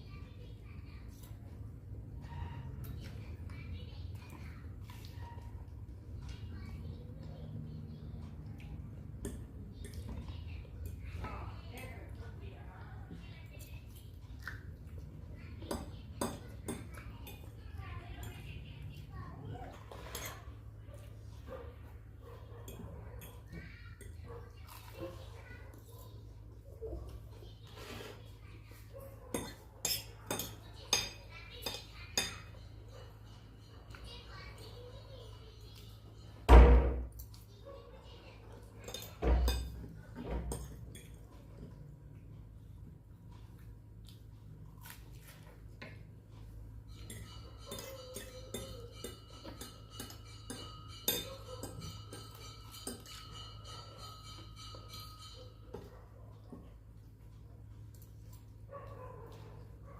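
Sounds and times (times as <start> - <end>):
utensils clinking against dishes: 15.3 - 18.7, 19.7 - 25.4, 27.6 - 42.0, 45.7 - 58.5
cutlery clinking on a plate: 29.3 - 34.2, 38.6 - 41.7, 46.9 - 56.7.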